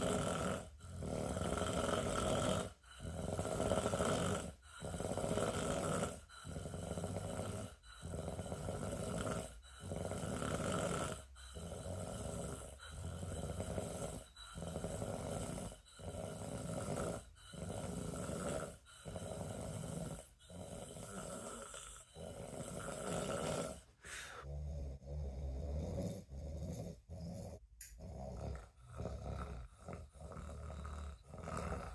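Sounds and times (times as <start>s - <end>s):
person snoring: 0.0s - 31.9s.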